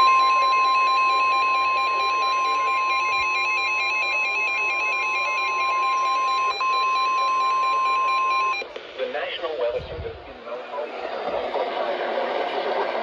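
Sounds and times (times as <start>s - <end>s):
steady alarm tone: 0.0s - 8.6s.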